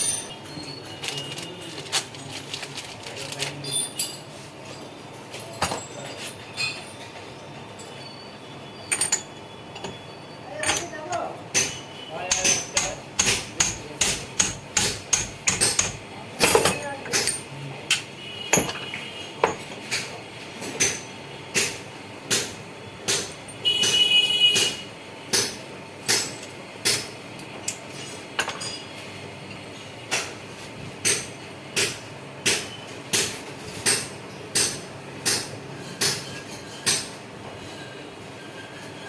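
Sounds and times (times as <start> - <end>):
hammer striking metal: 10.6 - 19.6, 20.8 - 27.2, 31.0 - 37.2
high-pitched metallic squeal: 37.6 - 39.0.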